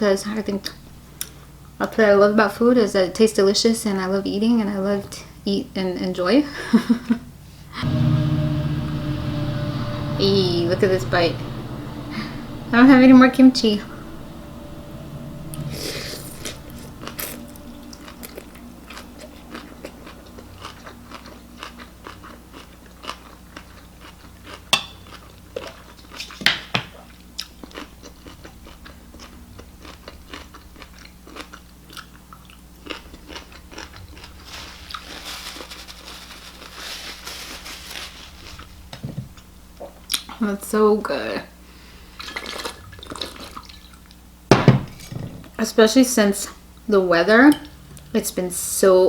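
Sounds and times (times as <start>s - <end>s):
person chewing food: 17.1s - 35.2s.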